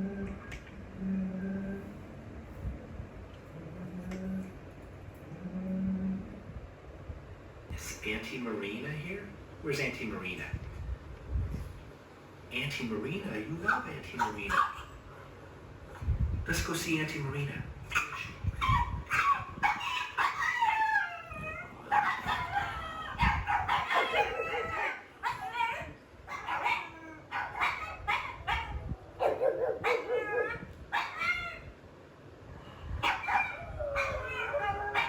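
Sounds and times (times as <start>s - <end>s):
dog barking and howling: 14.2s - 15.0s, 17.9s - 31.7s, 33.0s - 35.0s.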